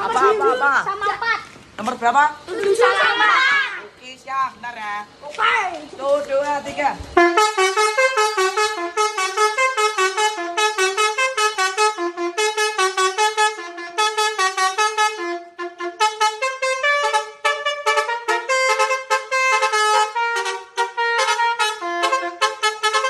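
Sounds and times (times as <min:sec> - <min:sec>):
multi-tone horn melody: 0:07.2 - 0:23.0.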